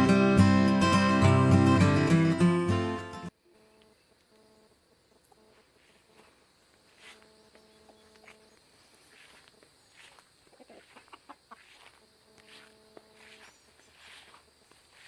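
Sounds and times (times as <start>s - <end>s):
chickens clucking: 9.2s - 14.4s.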